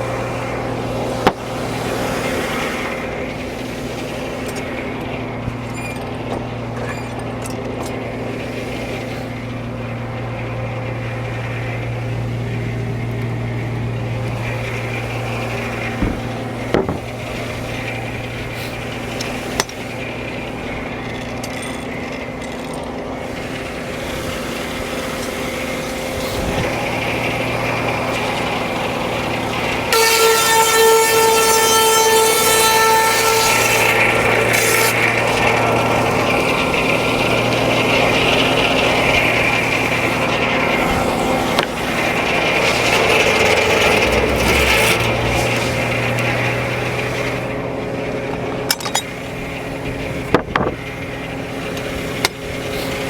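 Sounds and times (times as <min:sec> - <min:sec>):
saw blade cutting log whine: 0:00.0 - 0:53.0
sawmill engine running: 0:00.0 - 0:53.0.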